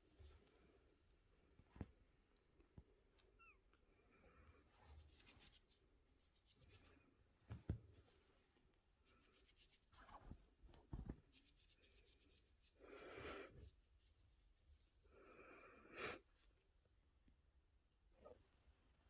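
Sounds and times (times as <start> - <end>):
scratching and rubbing on a surface: 4.5 - 7.0, 9.1 - 14.9.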